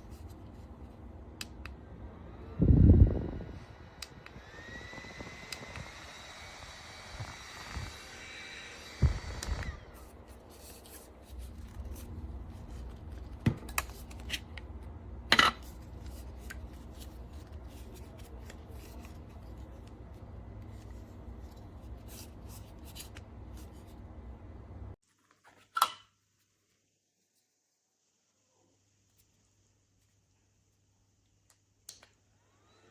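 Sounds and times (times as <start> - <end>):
handling noise rubbing and scraping: 0.0 - 1.6, 3.3 - 24.2
small electric fan whining: 0.0 - 25.0, 32.1 - 32.9.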